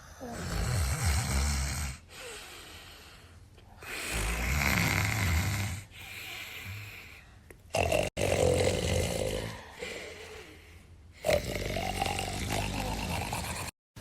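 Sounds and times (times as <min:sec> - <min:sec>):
man snoring heavily: 0:00.1 - 0:02.0, 0:03.8 - 0:05.9, 0:07.7 - 0:09.9, 0:11.2 - 0:13.8
quiet breath: 0:02.0 - 0:04.3, 0:05.8 - 0:07.5, 0:09.4 - 0:11.2.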